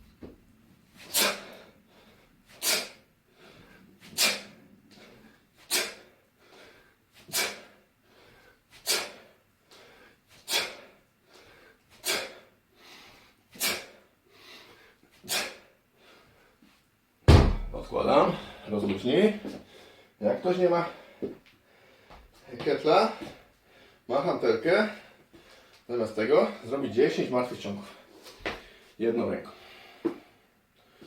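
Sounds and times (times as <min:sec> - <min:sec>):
person breathing out sharply: 0:01.0 - 0:16.5
soft in-breaths: 0:01.4 - 0:16.8, 0:19.5 - 0:20.2, 0:20.9 - 0:22.5, 0:23.2 - 0:24.1, 0:24.9 - 0:25.9, 0:27.9 - 0:31.0.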